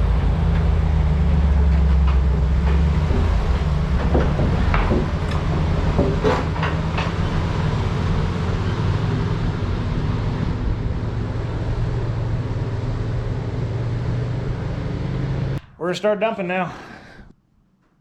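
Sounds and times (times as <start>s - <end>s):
engine humming: 0.0s - 15.6s
clunks: 0.1s - 9.2s.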